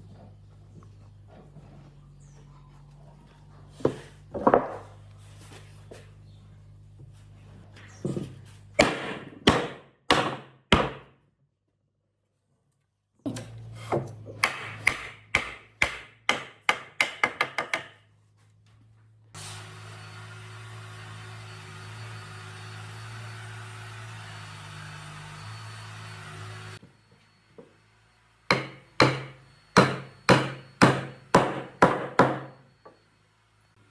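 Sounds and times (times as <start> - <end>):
hammer blows on wood: 28.5 - 32.6.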